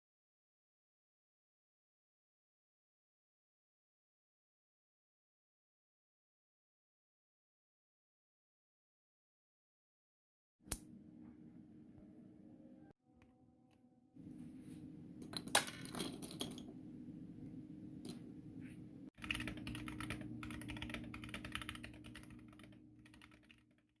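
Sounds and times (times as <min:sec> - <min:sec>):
typing on mechanical keyboard: 0:19.2 - 0:23.9.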